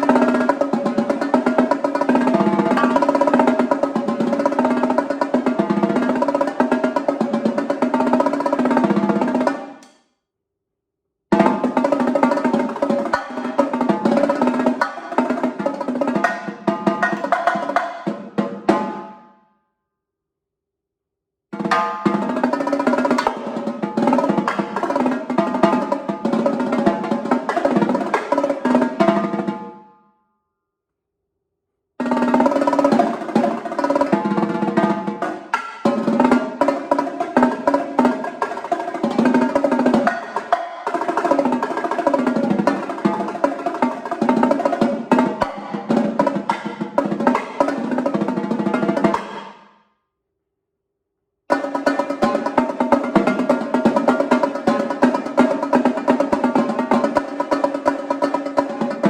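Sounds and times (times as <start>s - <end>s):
drum kit rolls and fills: 21.6s - 29.8s, 32.0s - 49.6s, 51.5s - 59.0s.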